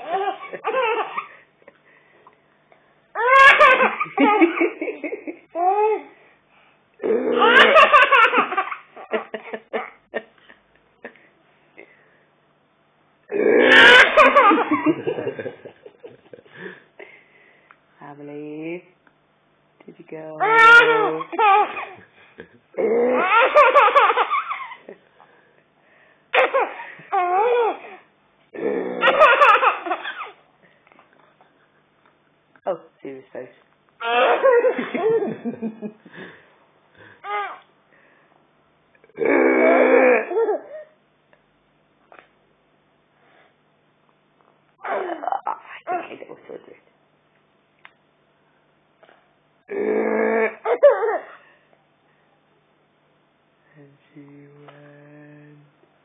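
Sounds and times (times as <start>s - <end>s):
baby laughing hard: 0.0s - 1.4s, 3.2s - 4.7s, 7.3s - 10.0s, 13.6s - 15.4s, 20.4s - 22.0s, 23.1s - 24.9s, 26.4s - 28.0s, 29.0s - 30.4s, 34.0s - 35.2s, 37.2s - 37.6s
baby squealing: 3.2s - 4.0s, 20.4s - 22.0s, 34.0s - 34.4s.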